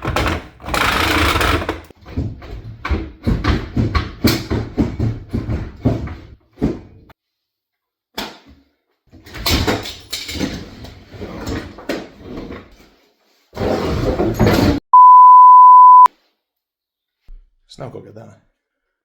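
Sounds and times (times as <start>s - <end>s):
wood banging and rattling: 0.0s - 7.0s.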